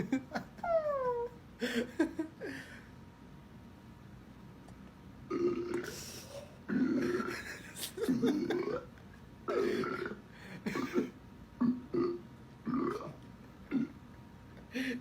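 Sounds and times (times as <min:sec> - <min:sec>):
person burping: 0:05.3 - 0:07.5, 0:08.1 - 0:08.9, 0:09.5 - 0:14.0.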